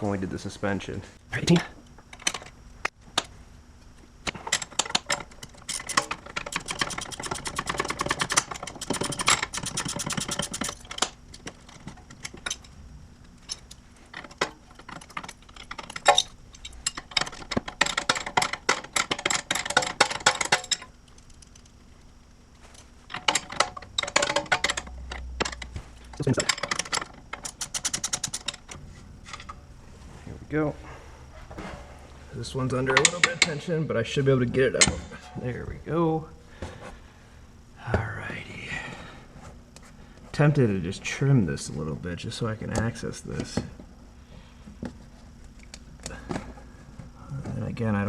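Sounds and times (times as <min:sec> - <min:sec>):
hand ratchet clicking: 0:04.5 - 0:12.6, 0:23.1 - 0:29.6.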